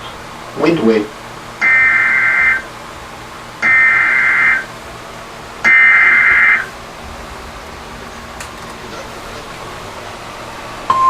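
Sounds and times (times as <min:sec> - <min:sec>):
buzzy data bursts: 0:00.6 - 0:10.9.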